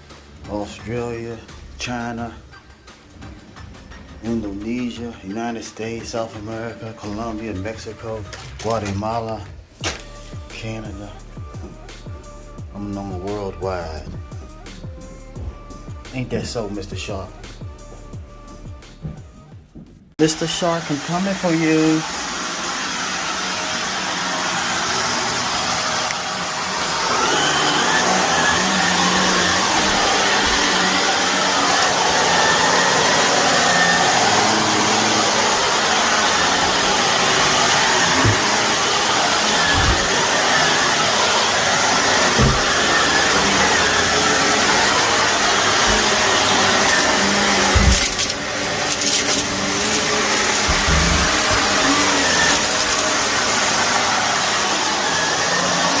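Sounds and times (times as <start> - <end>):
vacuum cleaner on carpet: 20.2 - 56.0.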